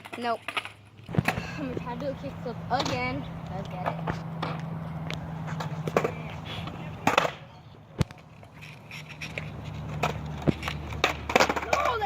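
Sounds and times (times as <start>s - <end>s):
skateboard clattering: 0.0s - 4.6s, 5.4s - 12.0s
skateboard wheels rolling on pavement: 0.0s - 12.0s
skateboard cracking on ground: 7.0s - 12.0s.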